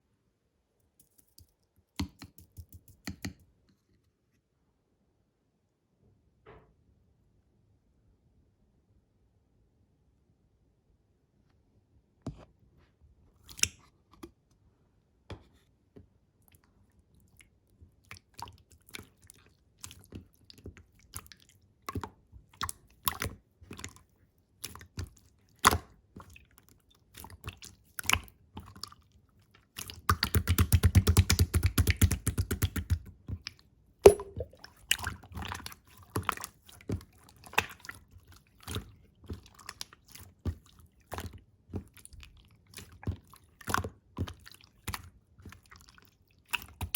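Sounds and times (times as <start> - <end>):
slime crackles and bubble pops: 34.0 - 37.8.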